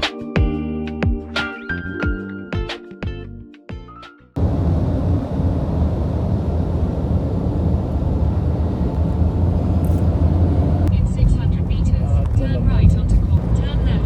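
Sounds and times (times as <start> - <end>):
low vehicle engine rumble: 4.4 - 14.0.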